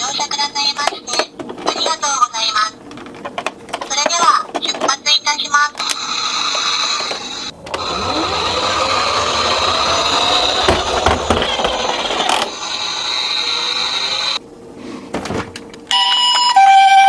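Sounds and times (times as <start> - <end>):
toy car wheels whirring: 5.8 - 14.4
knocks: 9.3 - 12.4.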